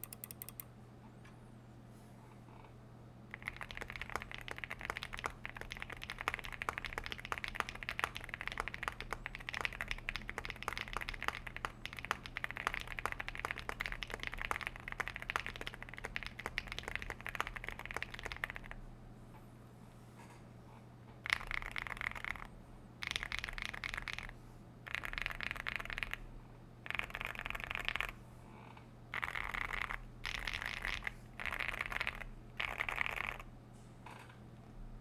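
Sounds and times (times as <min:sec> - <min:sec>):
mechanical keyboard typing: 0:00.0 - 0:00.7, 0:03.3 - 0:18.8, 0:21.3 - 0:24.3, 0:24.9 - 0:26.2, 0:26.9 - 0:28.2, 0:29.2 - 0:33.5.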